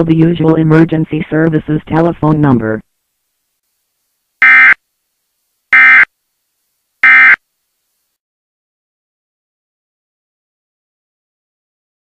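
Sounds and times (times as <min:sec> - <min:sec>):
buzzing digital data tones: 0:04.4 - 0:04.8, 0:07.0 - 0:07.4.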